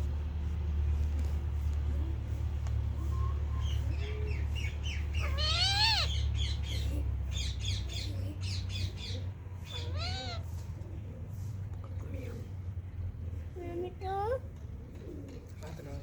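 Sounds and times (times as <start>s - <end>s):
parakeet squawking and chirping: 3.6s - 10.6s.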